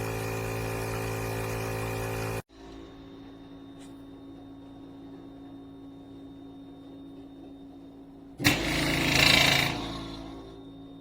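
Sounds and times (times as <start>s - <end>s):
espresso machine humming: 0.0s - 2.6s.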